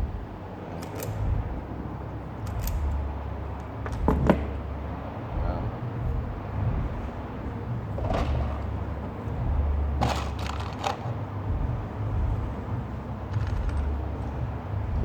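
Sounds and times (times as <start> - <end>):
low steady rumble: 0.0 - 15.0
hand tools clicking: 0.7 - 1.2, 2.4 - 3.0.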